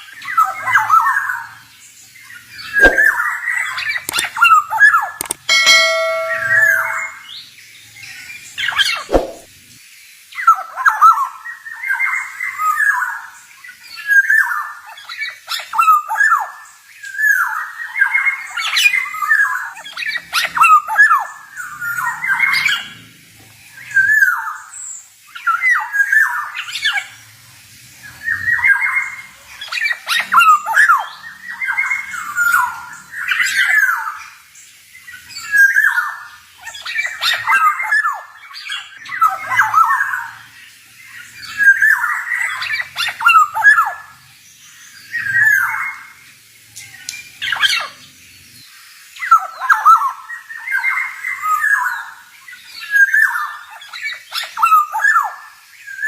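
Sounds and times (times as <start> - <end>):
bird singing rapid phrases: 2.6 - 3.2.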